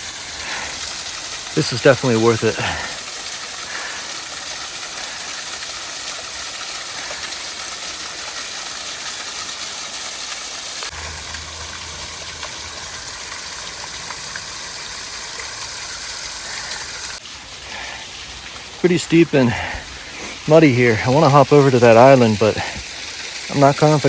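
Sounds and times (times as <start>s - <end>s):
small waterfall rushing: 0.0s - 24.0s
low rumble: 10.9s - 15.3s.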